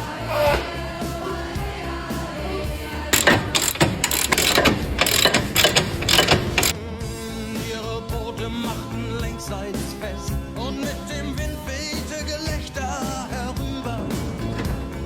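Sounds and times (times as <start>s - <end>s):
music with vocals: 0.0s - 15.0s
sharp mechanical clicks: 3.1s - 6.8s.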